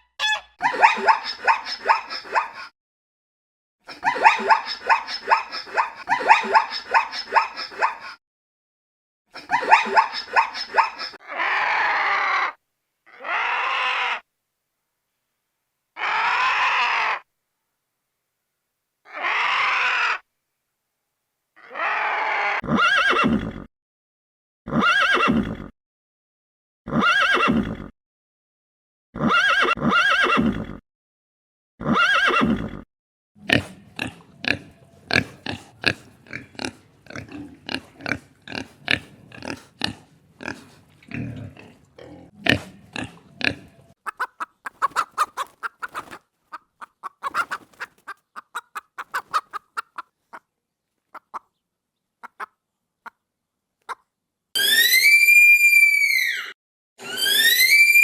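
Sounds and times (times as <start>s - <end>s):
rough pitched animal calls: 33.4s - 50.4s, 54.6s - 58.0s
clicking and chattering calls: 44.0s - 50.5s.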